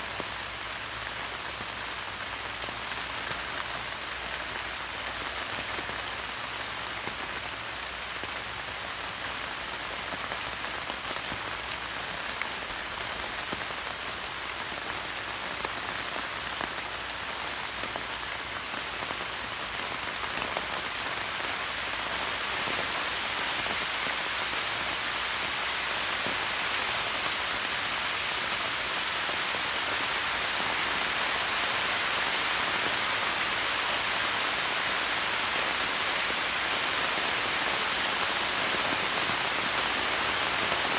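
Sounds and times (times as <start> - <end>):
rain falling on foliage: 0.0 - 40.9.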